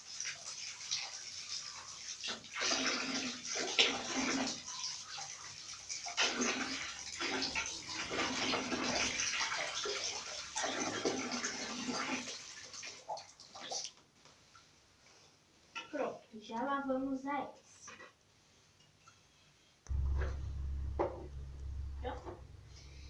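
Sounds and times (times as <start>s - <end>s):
water running and splashing: 0.0s - 14.0s.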